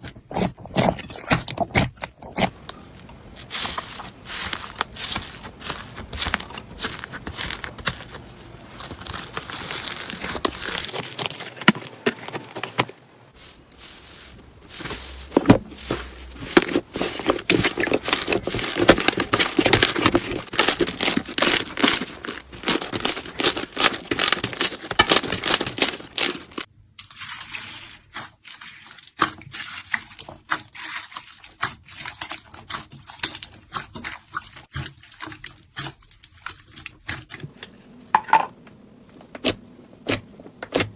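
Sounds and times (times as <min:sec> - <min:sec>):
slime crackling and popping: 0:16.2 - 0:26.7.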